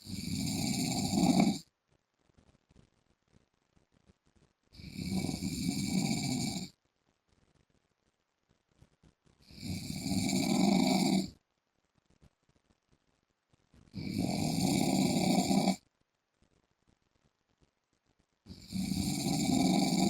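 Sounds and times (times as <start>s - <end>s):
man snoring: 0.0s - 1.6s, 4.8s - 6.7s, 9.5s - 11.3s, 14.0s - 15.8s, 18.5s - 20.0s.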